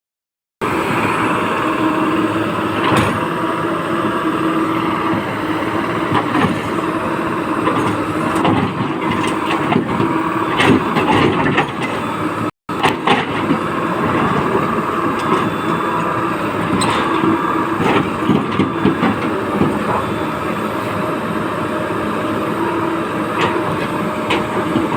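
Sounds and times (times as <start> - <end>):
excavator engine running: 0.6 - 24.9.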